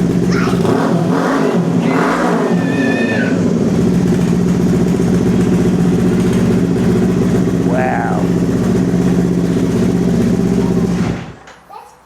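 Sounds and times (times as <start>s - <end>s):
motorcycle engine revving and idling: 0.0s - 11.4s.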